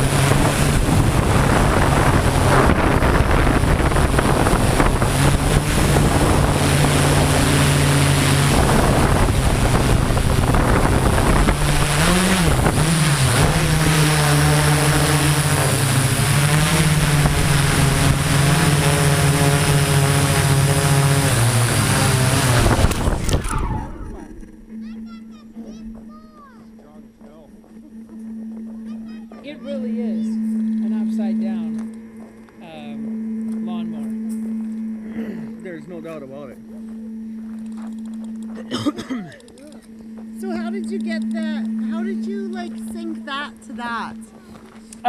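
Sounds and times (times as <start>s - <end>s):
wind noise: 0.0s - 24.9s
drone motors buzzing: 0.0s - 45.0s.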